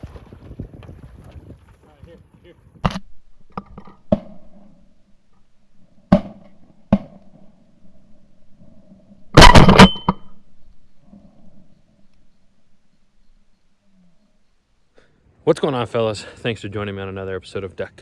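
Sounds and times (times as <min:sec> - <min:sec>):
sharp bangs: 0:09.4 - 0:10.2.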